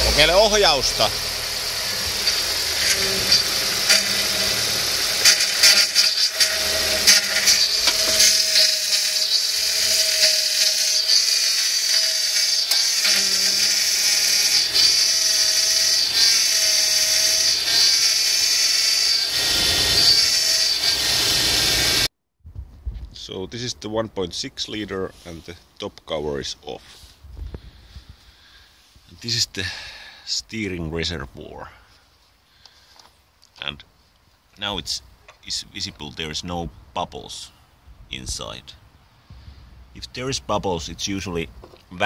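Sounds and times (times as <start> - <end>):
engine idling: 0.0 - 10.0
power steering pump whining: 0.0 - 22.1.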